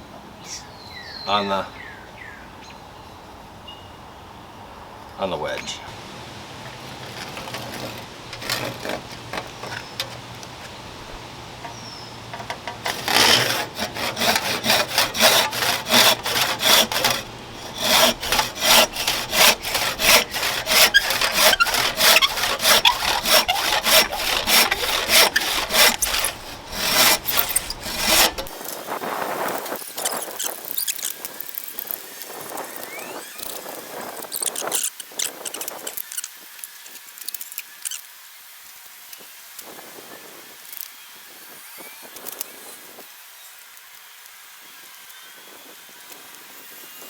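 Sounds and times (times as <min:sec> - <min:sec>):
hand saw cutting wood: 0:05.9 - 0:31.2.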